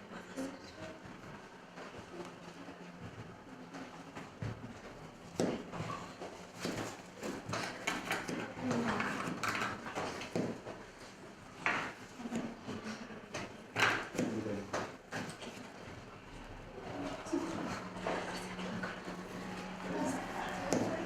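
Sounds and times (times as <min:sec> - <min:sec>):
faint voices: 0:14.3 - 0:21.0.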